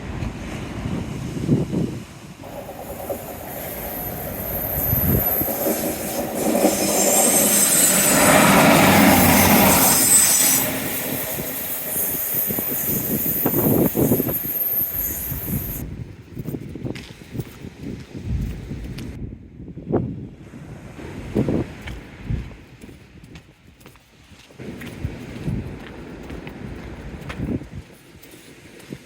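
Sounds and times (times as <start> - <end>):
train rumbling past: 0.0 - 15.8
high-pitched wheel squeal: 2.4 - 15.8.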